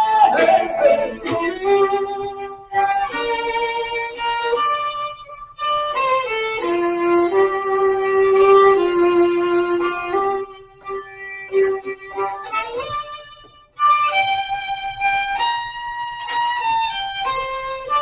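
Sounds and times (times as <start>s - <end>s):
violin playing slow melody: 0.0s - 18.0s.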